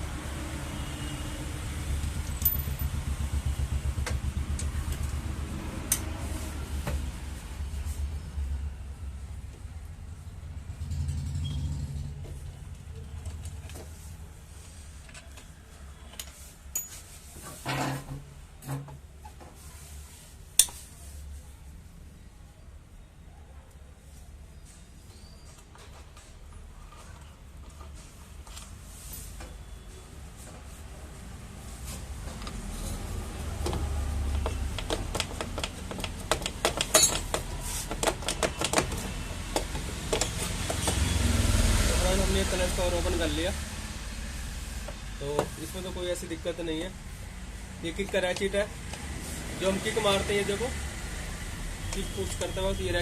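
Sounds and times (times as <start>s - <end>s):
hand tools clicking on bolts: 33.7s - 41.0s
metal tools rattling: 35.6s - 37.5s.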